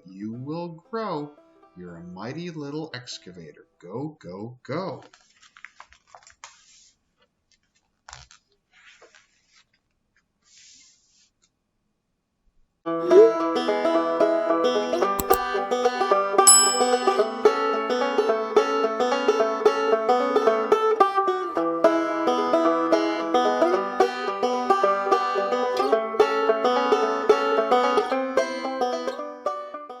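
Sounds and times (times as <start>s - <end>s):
upbeat banjo music: 12.9s - 30.0s.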